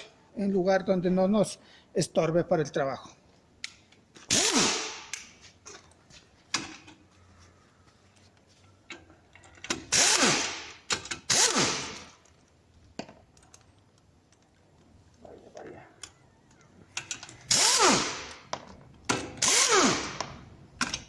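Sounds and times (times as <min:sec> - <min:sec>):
power wrench spinning lug nuts: 0:04.3 - 0:05.1, 0:09.6 - 0:12.2, 0:17.0 - 0:18.5, 0:19.2 - 0:20.4.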